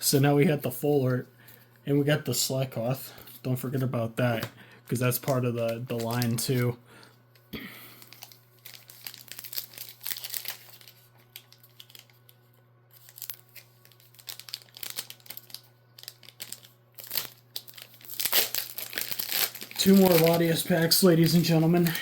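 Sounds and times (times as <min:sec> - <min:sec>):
cards being handled: 0:03.2 - 0:06.7, 0:12.9 - 0:22.0
foil wrapper crinkling: 0:05.0 - 0:06.7, 0:07.8 - 0:22.0.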